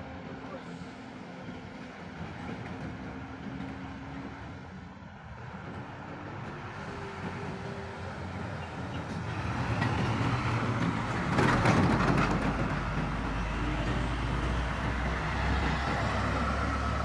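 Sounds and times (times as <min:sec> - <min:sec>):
heavy truck passing: 0:05.5 - 0:17.0.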